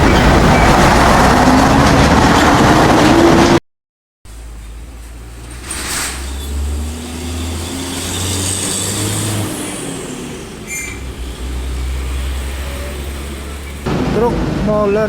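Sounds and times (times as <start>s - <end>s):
diesel truck passing: 4.3s - 15.0s
short high squeal: 5.5s - 10.0s, 10.6s - 11.5s.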